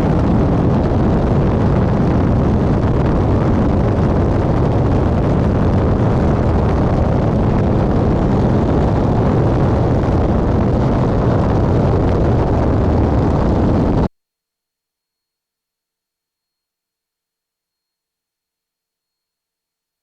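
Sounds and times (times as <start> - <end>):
aircraft engine roar in cabin: 0.0 - 14.1.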